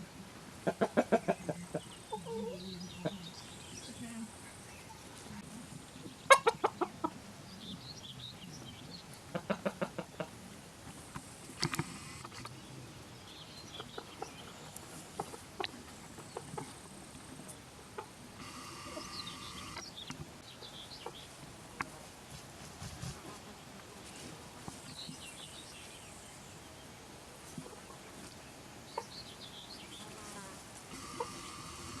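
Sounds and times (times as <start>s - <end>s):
chicken clucking: 0.6s - 3.2s, 6.0s - 7.2s, 9.3s - 10.4s, 13.6s - 20.2s, 30.9s - 32.0s.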